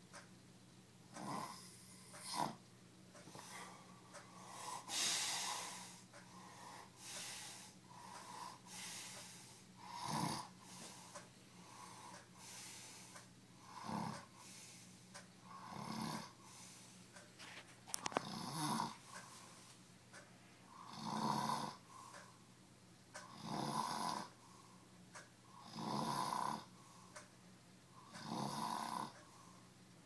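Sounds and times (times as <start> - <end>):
person snoring loudly: 1.2 - 2.6, 9.8 - 10.8, 13.6 - 14.3, 15.5 - 16.4, 18.2 - 19.0, 20.7 - 21.8, 23.2 - 24.4, 25.5 - 26.7, 28.0 - 29.2.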